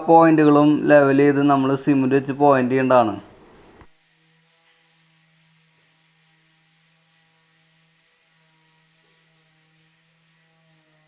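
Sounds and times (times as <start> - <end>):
faint electrical hum and hiss: 0.0 - 7.8.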